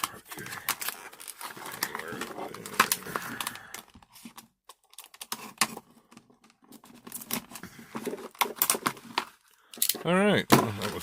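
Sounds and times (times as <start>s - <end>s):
hard plastic packaging crinkling: 0.0s - 11.0s.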